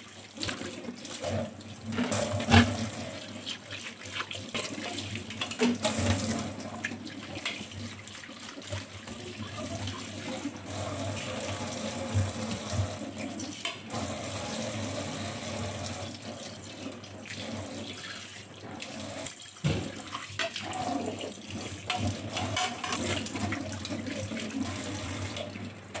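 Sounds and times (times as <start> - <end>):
tap water running into sink: 0.0 - 26.0
dishes clinking: 21.9 - 23.3.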